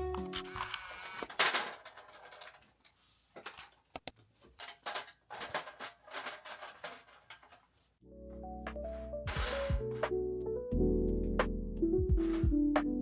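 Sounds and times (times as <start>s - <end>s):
objects knocking and rustling: 1.3s - 7.9s, 8.8s - 10.1s, 12.2s - 12.6s.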